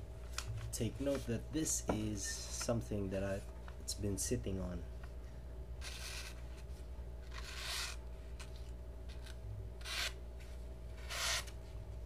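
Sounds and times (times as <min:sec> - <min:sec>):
knife blade rasping through paper: 0:07.3 - 0:08.0, 0:11.0 - 0:11.5.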